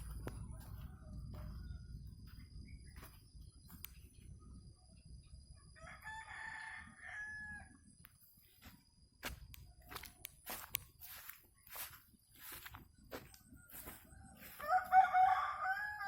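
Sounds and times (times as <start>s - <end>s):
rooster crowing faintly: 0.0s - 2.5s, 13.6s - 16.0s.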